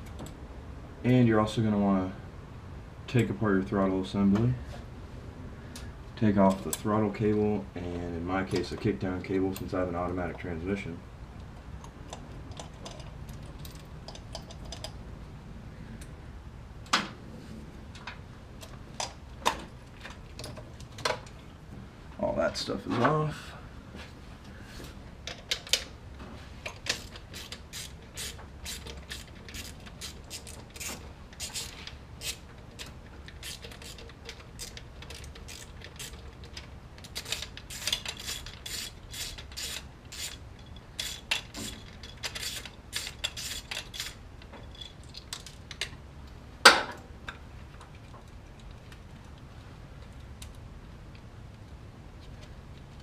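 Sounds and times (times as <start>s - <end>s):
socket ratchet clicking: 26.8s - 40.4s, 41.0s - 44.2s.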